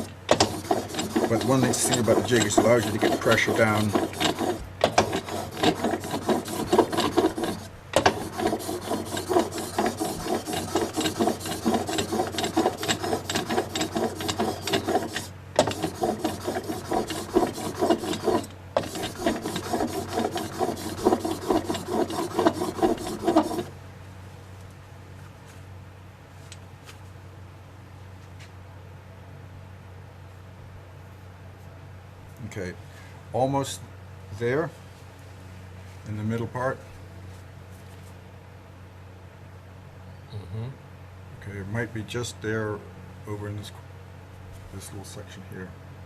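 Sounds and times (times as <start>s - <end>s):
blade rubbing on sharpening stone: 0.0s - 23.7s.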